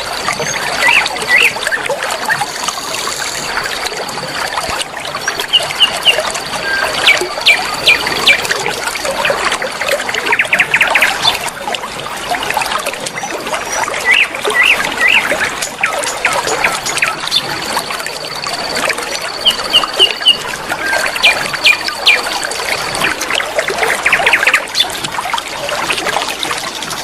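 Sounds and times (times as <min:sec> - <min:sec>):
river water flowing: 0:00.0 - 0:27.0
songbirds chirping: 0:05.3 - 0:08.6, 0:13.1 - 0:23.1.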